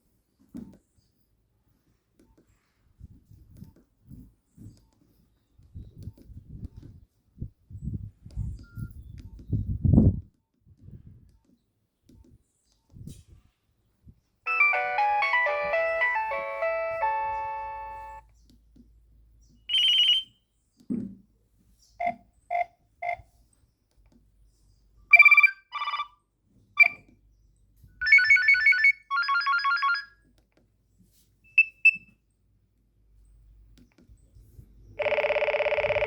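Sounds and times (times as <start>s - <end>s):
polyphonic ringtone melody: 14.5s - 18.2s
trilling alert tones: 14.5s - 18.2s.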